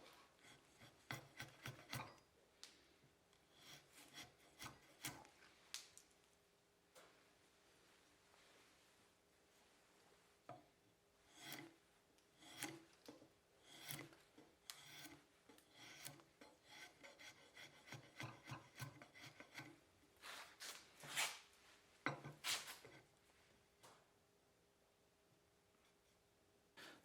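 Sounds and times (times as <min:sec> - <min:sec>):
faint wood rasp strokes: 0:00.0 - 0:02.2, 0:03.5 - 0:05.3, 0:11.3 - 0:21.4.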